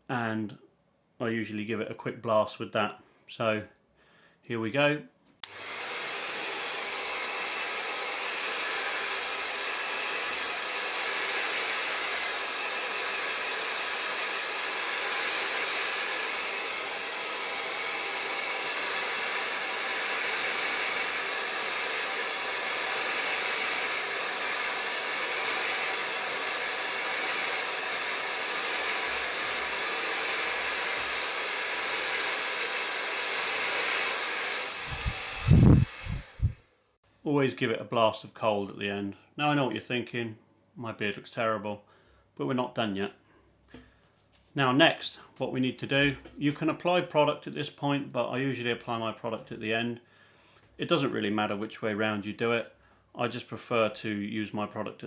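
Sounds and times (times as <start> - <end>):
hairdryer running: 5.4 - 36.8.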